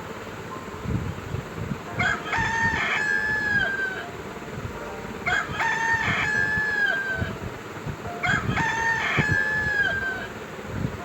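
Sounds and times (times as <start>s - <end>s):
rooster crowing: 2.0s - 4.1s, 5.2s - 7.4s, 8.2s - 10.3s.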